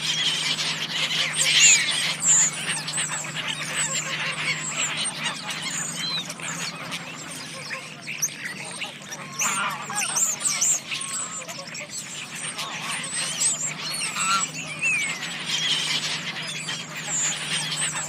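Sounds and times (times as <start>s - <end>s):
geese calling: 0.0s - 18.0s.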